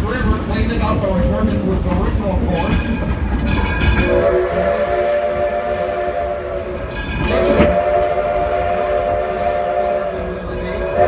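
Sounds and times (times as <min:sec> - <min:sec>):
train rumbling: 0:00.0 - 0:11.0
steam locomotive whistle: 0:03.9 - 0:11.0.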